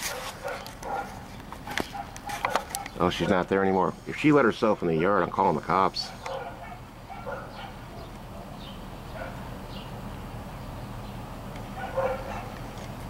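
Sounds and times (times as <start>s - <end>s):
dog barking: 0.1s - 3.5s, 6.0s - 8.6s, 9.2s - 9.5s, 11.7s - 12.6s
steady low hum: 0.3s - 13.0s.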